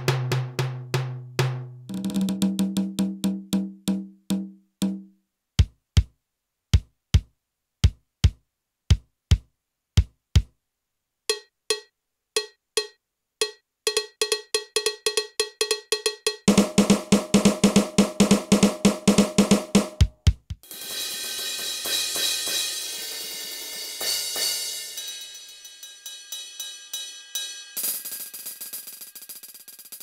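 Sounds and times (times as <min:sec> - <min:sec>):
electronic bass drum kicks: 0:16.5 - 0:20.6
electronic tom hits: 0:16.5 - 0:22.6
ringing cowbell-like hits: 0:20.7 - 0:30.0.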